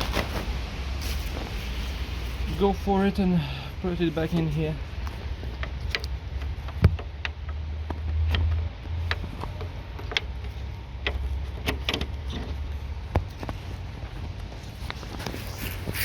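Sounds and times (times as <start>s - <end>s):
plastic light parts clicking: 5.0s - 13.5s.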